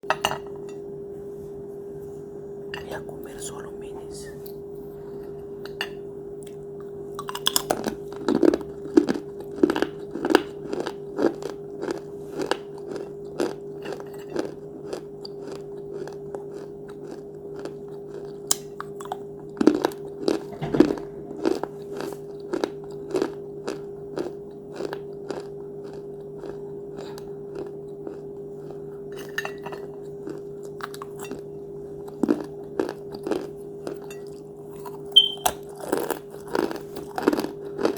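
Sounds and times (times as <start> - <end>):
crunchy chewing: 6.4 - 37.9
low hum: 20.4 - 22.5.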